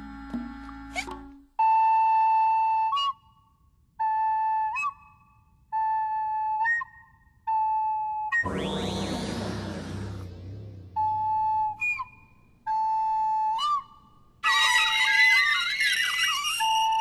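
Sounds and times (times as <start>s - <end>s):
recorder playing long notes: 8.4s - 11.8s
squeaky recorder pitch jumps: 8.4s - 12.4s.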